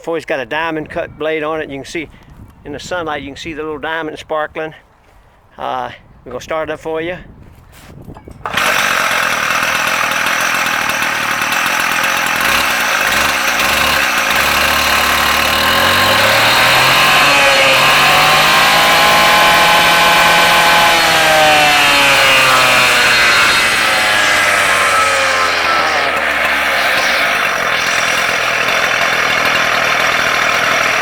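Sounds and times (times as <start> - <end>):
cut-off saw running: 8.4 - 31.0.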